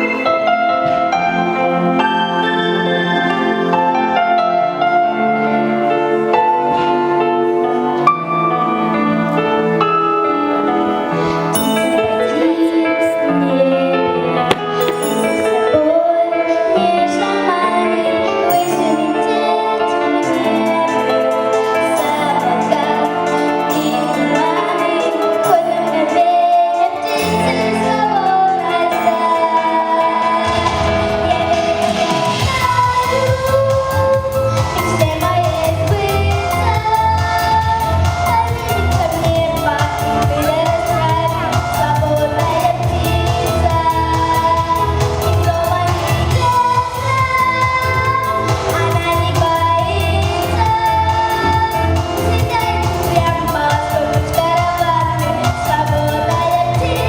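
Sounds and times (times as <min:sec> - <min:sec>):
instrumental accompaniment with bass: 0:00.0 - 0:57.0
woman singing pop song: 0:11.5 - 0:57.0.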